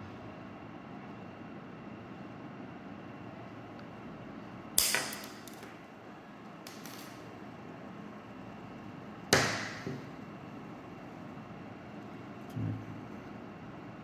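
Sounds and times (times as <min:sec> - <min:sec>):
cutters snapping metal clip: 0:04.8 - 0:05.8.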